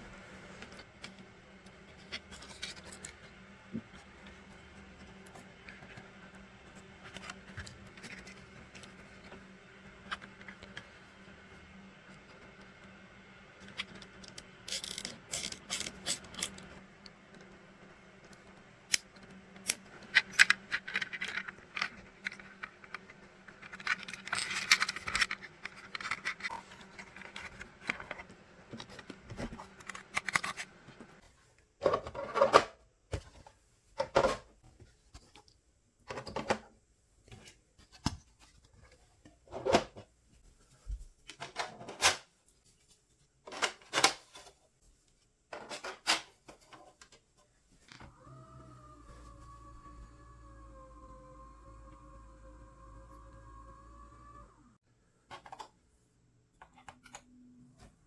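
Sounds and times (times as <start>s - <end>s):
low steady hum: 0.0s - 41.4s, 47.4s - 58.0s
plastic parts clicking and scraping: 0.6s - 3.3s, 5.0s - 9.4s, 13.6s - 17.6s, 18.2s - 31.2s, 45.5s - 48.7s, 55.2s - 55.8s.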